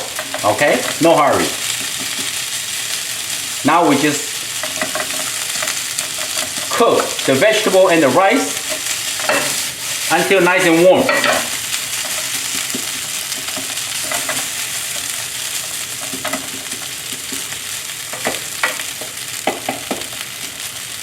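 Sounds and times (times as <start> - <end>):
spatula scraping pan: 0.0 - 17.6
food sizzling in frying pan: 0.0 - 21.0.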